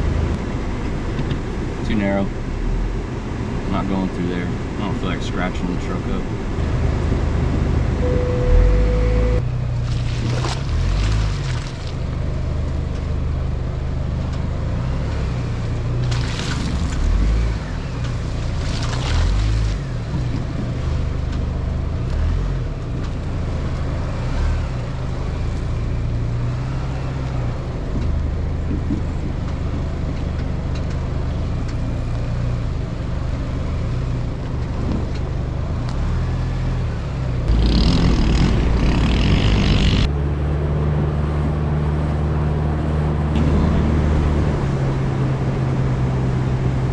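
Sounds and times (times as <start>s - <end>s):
pickup engine drone: 0.0s - 46.9s
rushing noises: 37.5s - 40.1s.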